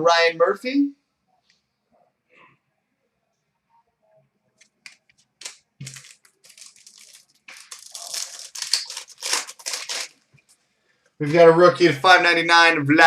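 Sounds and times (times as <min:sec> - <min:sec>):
plastic packaging crinkling: 0:04.6 - 0:10.6.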